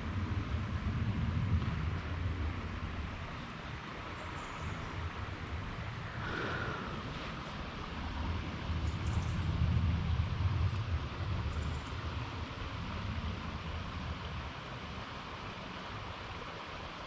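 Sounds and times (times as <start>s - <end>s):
wind rumble on microphone: 0.0s - 17.0s
river water rushing: 2.9s - 9.0s, 11.0s - 17.0s.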